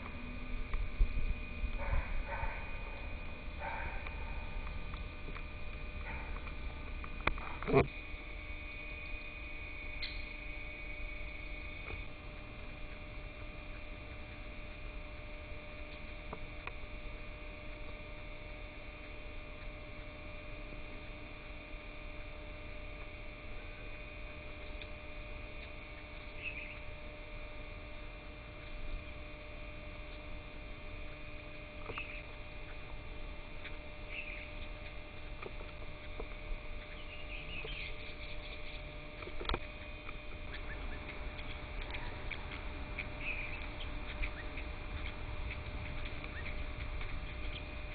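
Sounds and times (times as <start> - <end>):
low rumble: 0.0 - 19.0
steady hum of held tones: 0.0 - 47.9
faint bird chirps: 8.6 - 11.8, 23.6 - 27.0, 31.0 - 33.0, 33.6 - 47.9.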